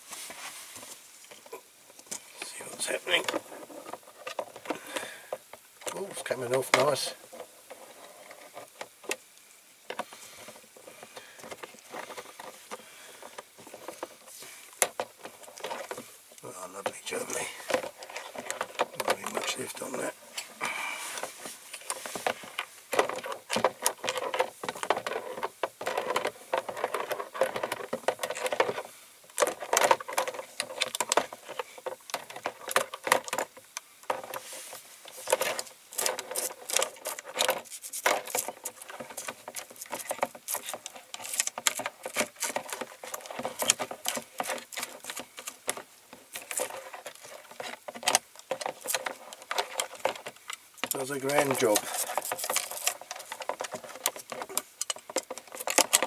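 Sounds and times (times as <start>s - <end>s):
small metallic clatters: 21.2s - 56.0s.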